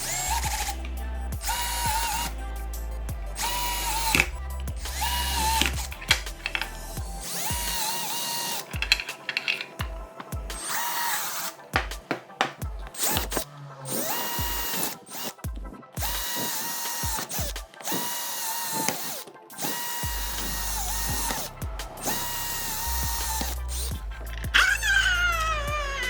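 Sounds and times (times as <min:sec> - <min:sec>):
electric drill whining: 0:00.0 - 0:02.4, 0:03.4 - 0:24.0, 0:24.6 - 0:26.0
clicks: 0:03.4 - 0:24.0.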